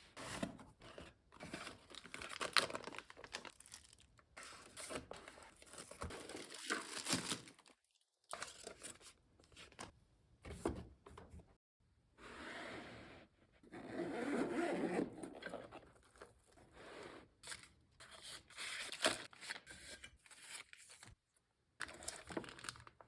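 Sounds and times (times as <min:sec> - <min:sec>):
packaging crinkling and tearing: 0:01.4 - 0:09.0, 0:21.8 - 0:23.0.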